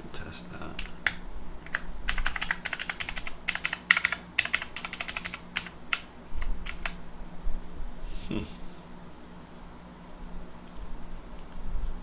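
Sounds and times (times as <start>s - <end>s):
mechanical keyboard key clicks: 6.6s - 7.0s.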